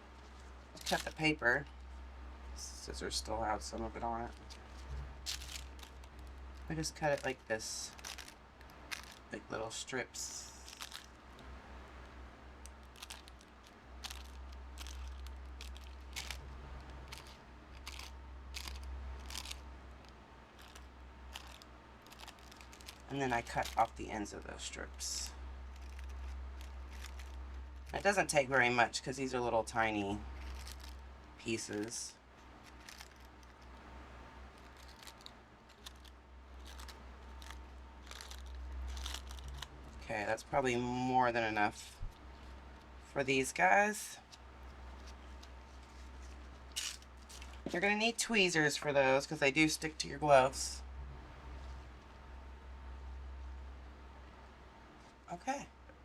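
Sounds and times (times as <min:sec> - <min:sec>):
scissors snipping paper: 0:25.7 - 0:28.1, 0:34.6 - 0:39.6.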